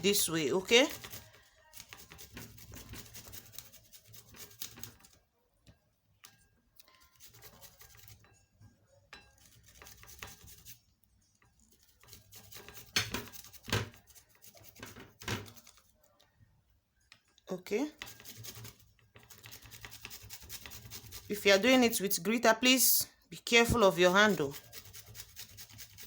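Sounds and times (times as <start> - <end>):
ginger grating on hand grater: 0.0 - 5.1, 7.1 - 8.3, 9.4 - 10.8, 11.8 - 15.8, 17.9 - 22.0, 23.5 - 26.0.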